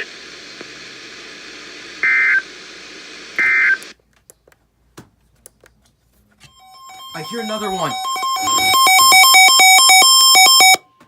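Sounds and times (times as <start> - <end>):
radio background hiss: 0.0 - 4.0
warbling digital data tones: 6.6 - 10.7.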